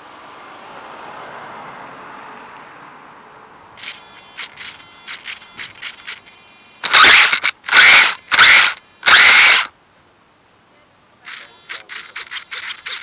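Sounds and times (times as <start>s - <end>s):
toy car electric motor whirring: 3.8s - 9.7s, 11.3s - 13.0s.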